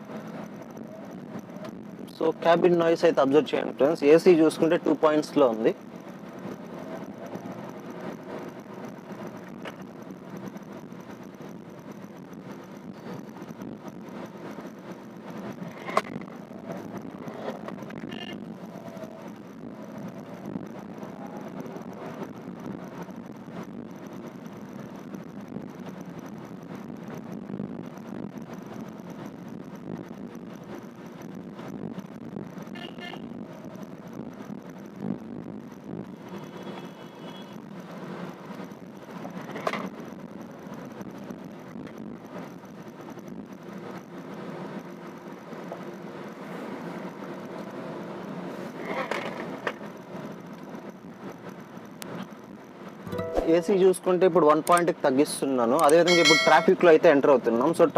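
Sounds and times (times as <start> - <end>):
road tyre and engine hum: 0.0 - 57.9
brief high tone: 53.1 - 53.7, 56.1 - 56.8.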